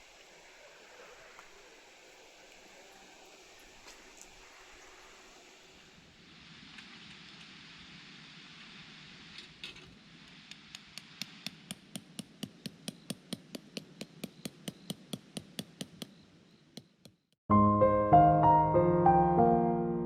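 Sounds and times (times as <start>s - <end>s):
faint hiss: 0.0s - 13.2s.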